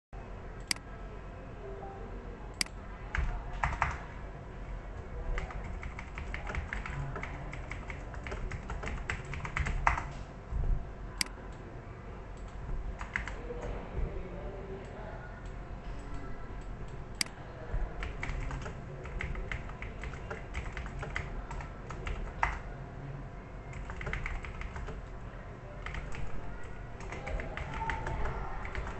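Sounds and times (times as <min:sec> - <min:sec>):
keyboard typing clicks: 0:02.6 - 0:04.0, 0:05.4 - 0:10.2, 0:12.4 - 0:13.4, 0:18.0 - 0:22.6, 0:23.7 - 0:25.0, 0:25.8 - 0:28.9.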